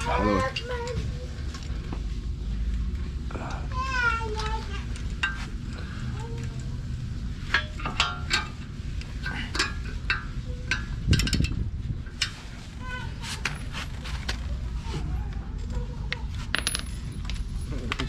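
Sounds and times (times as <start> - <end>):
steady low hum: 0.0 - 18.0
metal parts clinking: 16.4 - 18.0.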